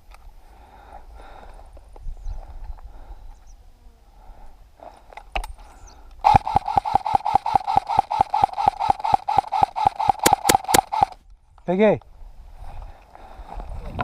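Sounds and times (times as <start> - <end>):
airsoft gun full-auto shots: 6.2 - 11.2.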